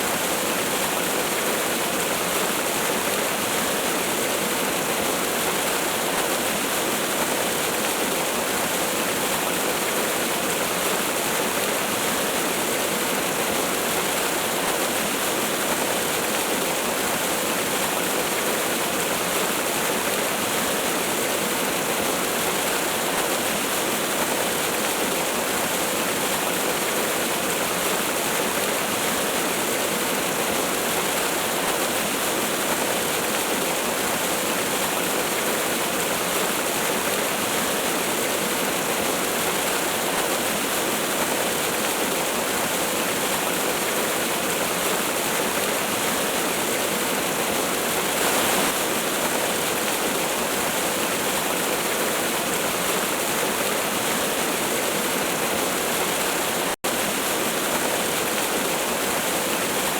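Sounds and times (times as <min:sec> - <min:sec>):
waterfall rushing: 0:37.8 - 0:59.9.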